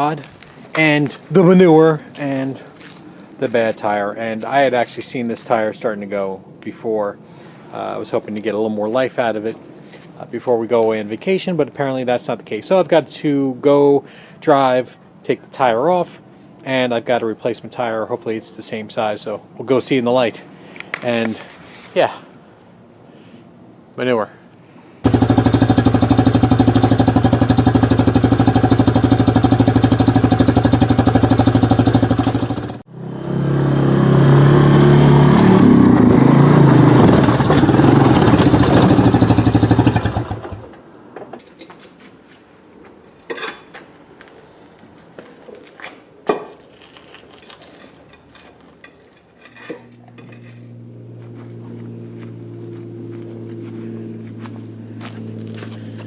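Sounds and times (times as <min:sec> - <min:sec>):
quad engine running: 0:25.0 - 0:40.8, 0:49.9 - 0:56.0
low steady hum: 0:46.9 - 0:56.0.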